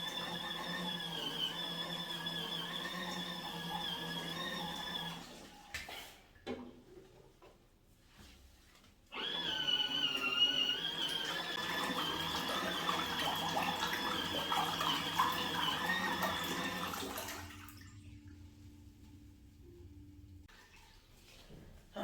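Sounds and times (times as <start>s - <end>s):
water running and splashing: 11.6s - 18.0s
faint low hum: 17.5s - 20.5s.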